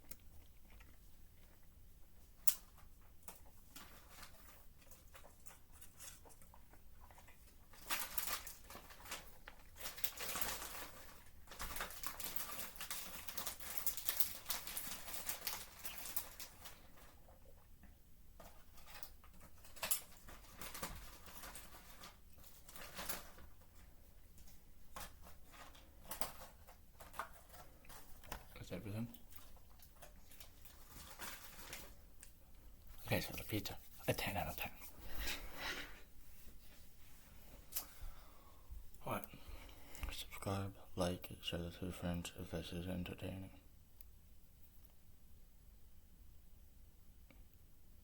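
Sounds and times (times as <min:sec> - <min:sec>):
person chewing food: 0:00.0 - 0:02.2
packaging rustling and crinkling: 0:00.1 - 0:17.4, 0:18.4 - 0:38.0.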